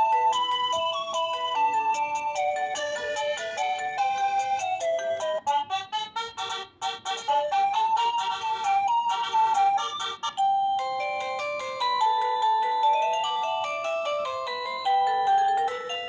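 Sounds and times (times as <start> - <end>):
electronic doorbell chime melodies: 0.0 - 5.5, 7.3 - 16.0.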